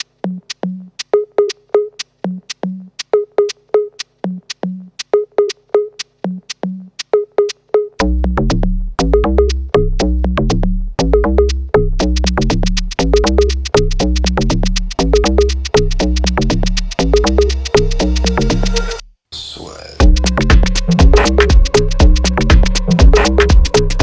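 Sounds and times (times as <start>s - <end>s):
drum machine beat: 0.0s - 19.1s, 20.0s - 24.0s
heavy bass line: 8.0s - 19.1s, 20.0s - 24.0s.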